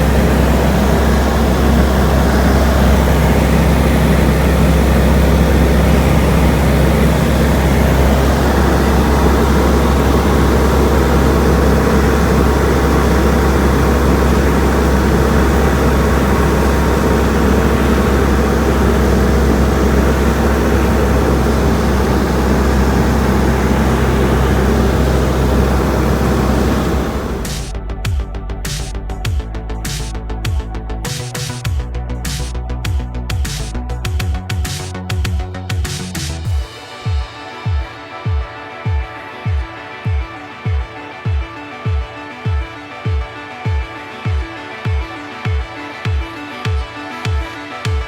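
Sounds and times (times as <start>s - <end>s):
wide rushing noise: 0.0s - 31.6s
engine drone: 0.0s - 35.0s.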